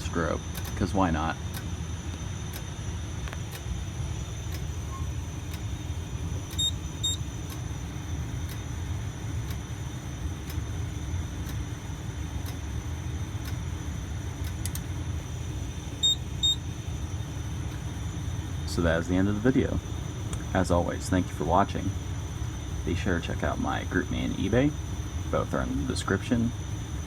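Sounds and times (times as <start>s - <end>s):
steady low hum: 0.0s - 27.0s
double clicks: 14.4s - 14.9s.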